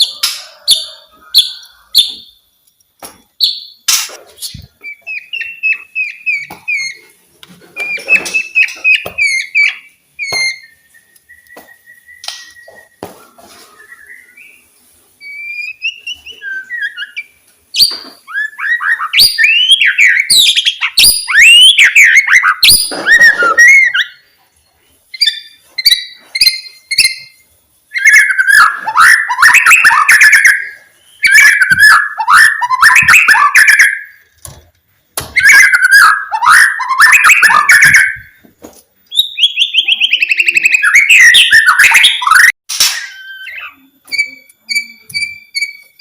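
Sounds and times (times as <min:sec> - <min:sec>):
bird singing whistled phrases: 0:07.8 - 0:13.0, 0:15.2 - 0:24.2, 0:25.2 - 0:34.2, 0:35.4 - 0:38.3, 0:39.1 - 0:46.0.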